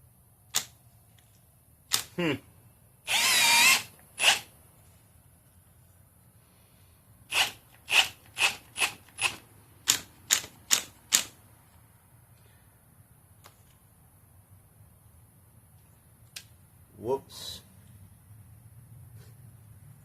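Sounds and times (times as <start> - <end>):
cordless drill driving a screw: 3.1 - 4.5, 7.3 - 9.4.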